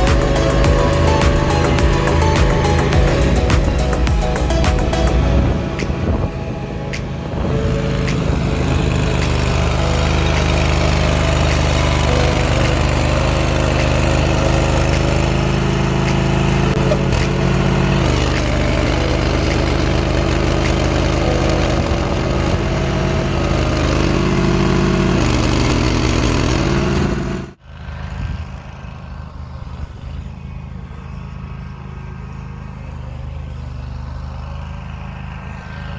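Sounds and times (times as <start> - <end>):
engine running: 0.0 - 35.9
quieter engine running: 0.0 - 35.9.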